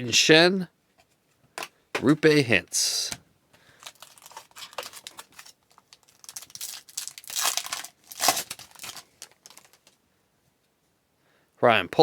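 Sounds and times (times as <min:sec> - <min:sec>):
wrapper tearing and crinkling: 0:03.8 - 0:10.0.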